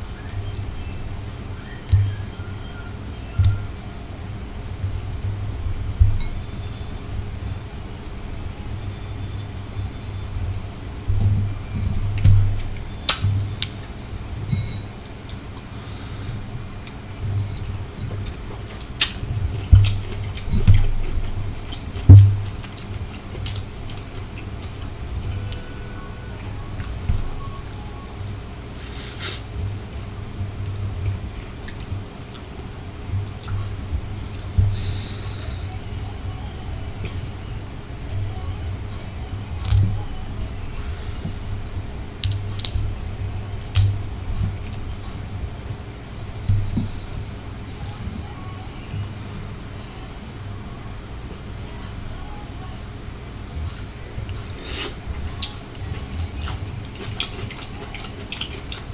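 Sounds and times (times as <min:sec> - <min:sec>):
wet chewing and mouth smacks: 0:17.4 - 0:25.4, 0:53.7 - 0:58.9.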